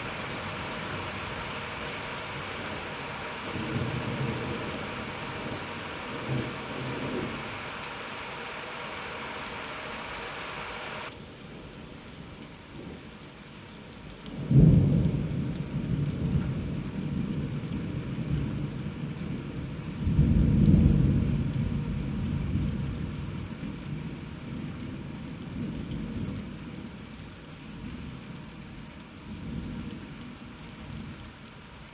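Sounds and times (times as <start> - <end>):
thunder rumbling: 0.0 - 11.1
rain hiss: 0.0 - 31.9.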